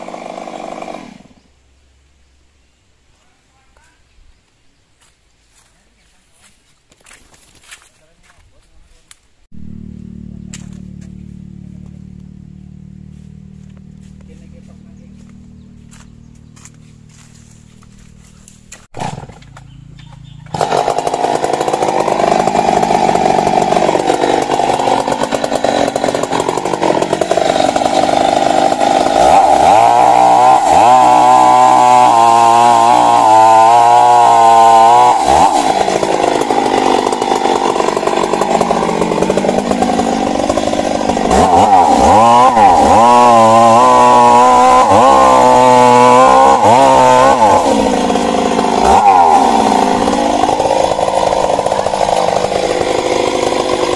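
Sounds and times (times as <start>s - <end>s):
chainsaw cutting tree trunk: 0.0s - 1.5s, 9.6s - 12.4s, 15.2s - 53.9s.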